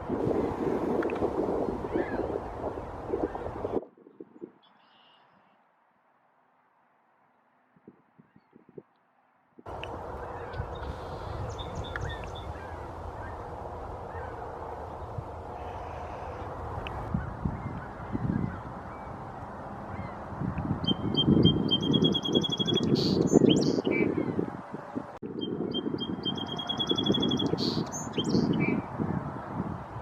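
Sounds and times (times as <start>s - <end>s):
small birds calling: 9.7s - 13.5s, 20.8s - 24.4s, 25.8s - 28.8s.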